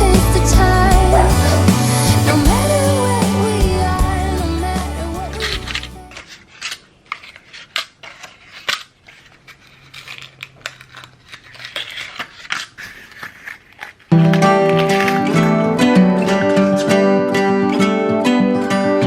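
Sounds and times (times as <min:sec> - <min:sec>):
small hard objects clicking and scraping: 0:05.2 - 0:15.5.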